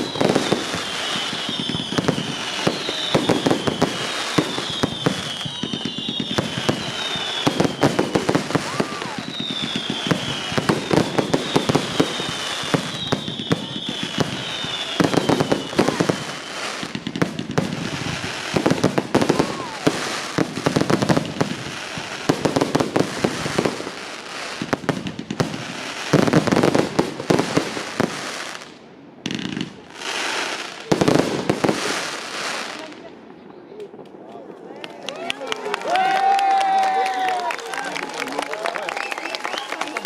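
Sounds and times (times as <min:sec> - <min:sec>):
falling firework whistles: 0:00.0 - 0:28.7
fireworks bangs and crackling: 0:00.0 - 0:35.2.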